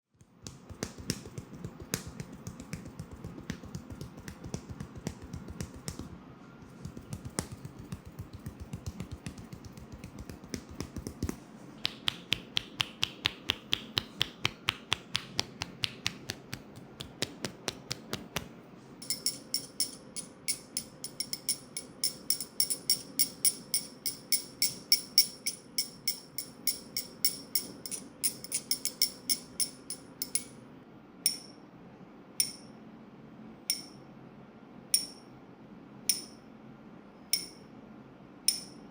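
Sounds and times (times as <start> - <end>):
hand massage taps on head: 0.2 - 18.5.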